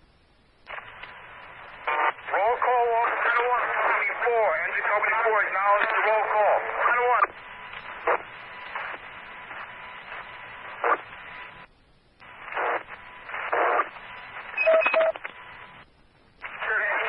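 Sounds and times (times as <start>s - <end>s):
noisy radio key-ups: 0.6s - 17.0s
radio channel hiss: 0.6s - 17.0s
radio squelch tail: 0.7s - 15.8s, 16.4s - 17.0s.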